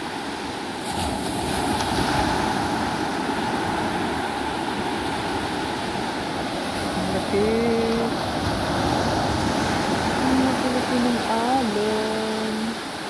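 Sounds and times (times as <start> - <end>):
sea waves washing on shore: 0.0 - 13.0.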